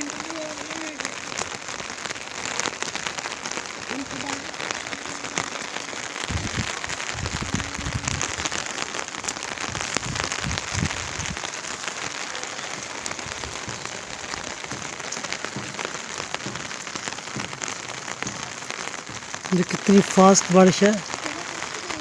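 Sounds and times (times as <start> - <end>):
heavy rain falling: 0.0 - 22.0
low bumps: 3.8 - 19.9.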